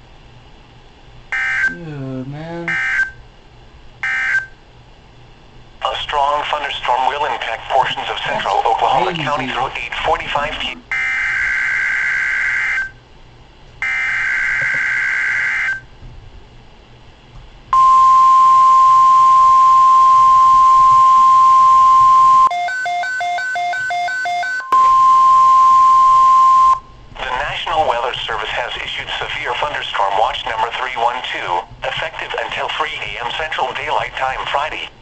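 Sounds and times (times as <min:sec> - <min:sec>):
steady warning alarm tone: 0:01.3 - 0:02.0, 0:02.6 - 0:03.3, 0:04.0 - 0:04.6, 0:08.3 - 0:13.0, 0:13.8 - 0:15.9, 0:17.7 - 0:27.0
touch-tone beeps: 0:17.8 - 0:26.9.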